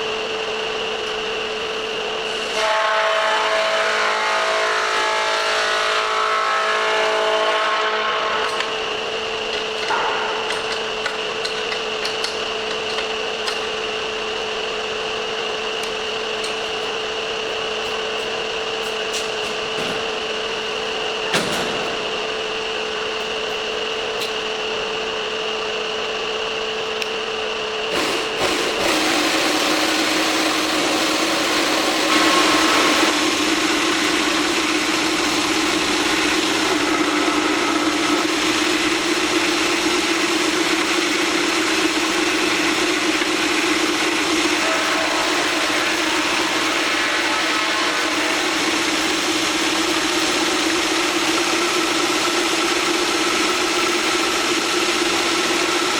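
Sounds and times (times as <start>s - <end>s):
sander motor humming: 0.0s - 55.9s.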